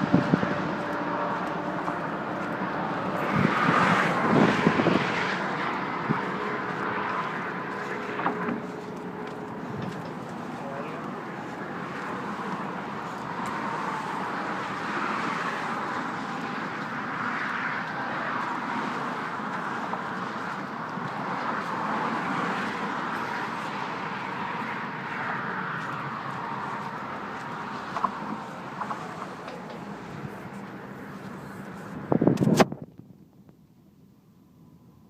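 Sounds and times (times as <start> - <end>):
road traffic passing: 0.0 - 35.0.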